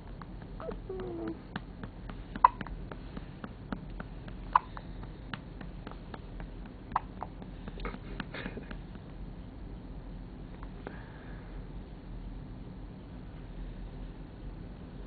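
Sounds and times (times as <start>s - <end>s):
newborn hiccuping: 0.6s - 1.4s, 2.4s - 2.6s, 4.5s - 4.8s.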